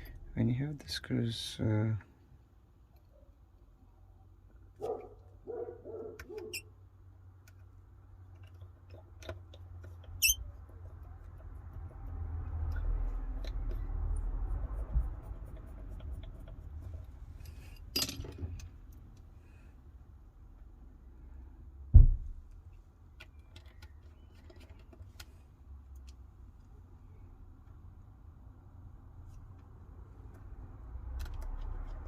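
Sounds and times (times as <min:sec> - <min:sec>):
small tools clicking and tapping: 0:07.4 - 0:11.5
short squeaky tones: 0:10.2 - 0:10.5.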